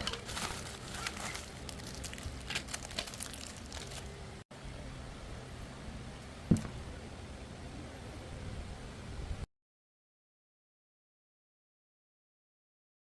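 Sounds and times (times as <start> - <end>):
steady low hiss: 0.0 - 9.5
sharp thump: 6.5 - 6.8.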